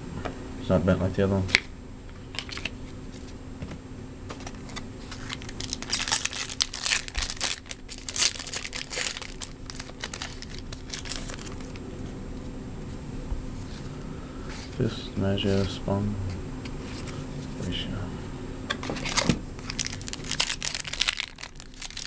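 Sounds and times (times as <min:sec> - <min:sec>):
wrapper crinkling and tearing: 0:02.4 - 0:02.7, 0:04.4 - 0:11.8, 0:18.9 - 0:22.0.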